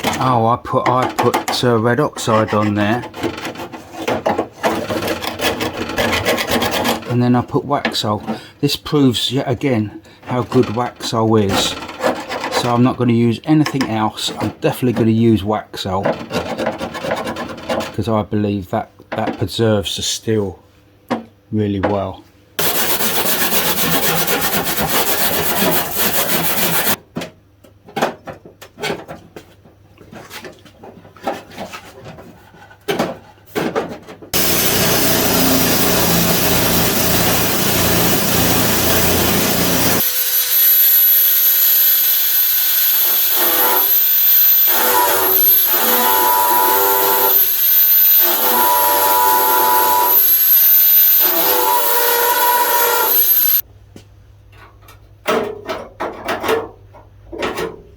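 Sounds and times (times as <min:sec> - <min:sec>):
power tool grinding metal: 0:22.6 - 0:27.0, 0:34.4 - 0:53.6
high motor whine: 0:34.4 - 0:51.9, 0:52.6 - 0:53.6.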